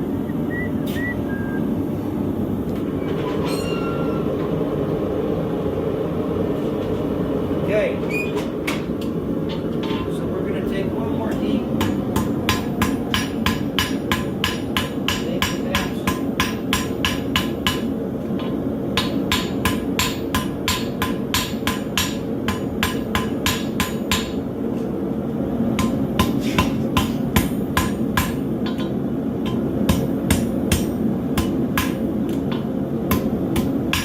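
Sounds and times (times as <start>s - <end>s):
hammer striking hot steel on anvil: 3.5s - 4.2s, 11.8s - 24.5s, 25.7s - 34.0s.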